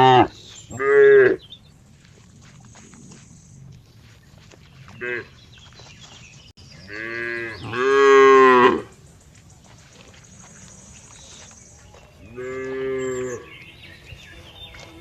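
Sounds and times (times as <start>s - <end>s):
cow mooing: 0.0s - 1.4s, 6.9s - 8.9s, 12.2s - 13.5s.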